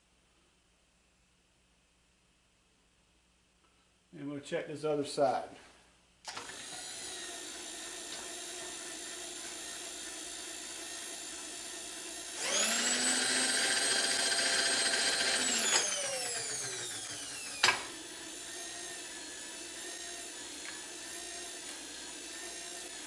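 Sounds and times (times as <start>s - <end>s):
small electric motor whining: 6.3s - 23.0s.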